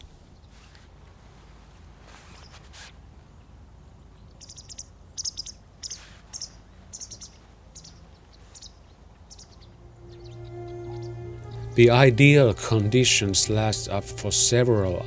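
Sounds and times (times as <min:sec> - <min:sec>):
small bird chirping: 0:04.2 - 0:11.7.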